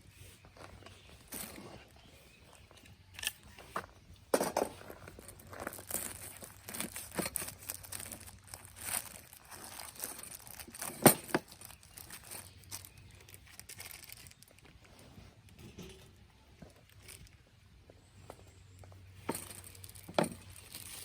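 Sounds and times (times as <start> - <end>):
crinkly rustling: 0.0 - 21.0.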